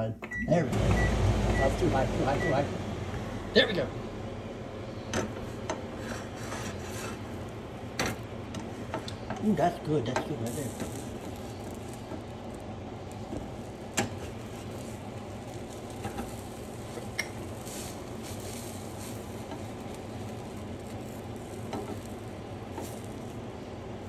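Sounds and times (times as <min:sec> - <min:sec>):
kitchen fans: 0:00.0 - 0:24.0
sandwich sizzling in a frying pan: 0:05.3 - 0:24.0.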